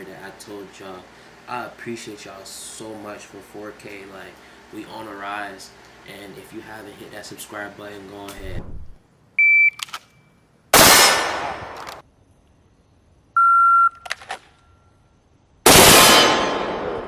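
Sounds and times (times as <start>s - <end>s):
shot timer beeps: 9.4s - 9.8s, 13.4s - 14.0s
pistol shots: 10.8s - 12.0s, 15.7s - 17.0s.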